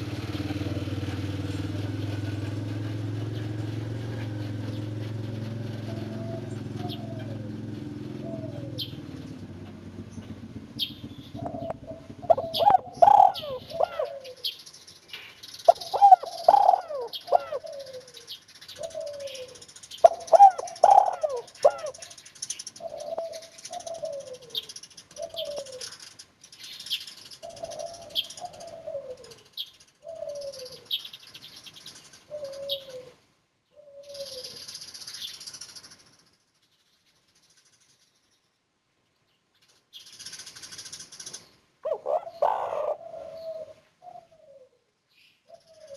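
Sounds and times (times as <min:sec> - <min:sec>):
dove cooing: 0:00.0 - 0:14.6, 0:15.7 - 0:22.2, 0:22.8 - 0:26.0, 0:27.4 - 0:31.0, 0:32.3 - 0:33.2, 0:33.8 - 0:34.6, 0:41.8 - 0:44.8, 0:45.5 - 0:45.9
small birds chirping faintly: 0:00.0 - 0:45.9.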